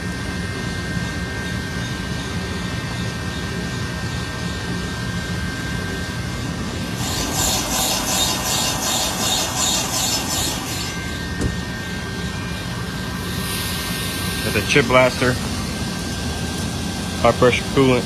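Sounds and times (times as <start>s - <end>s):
machine-shop equipment drone: 0.0s - 18.0s
high whine: 5.6s - 18.0s
pulsing hiss: 6.8s - 18.0s.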